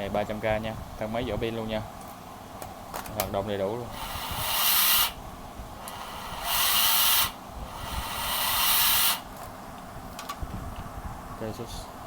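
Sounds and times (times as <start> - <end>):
cordless drill whirring: 4.0 - 5.2, 5.8 - 9.3.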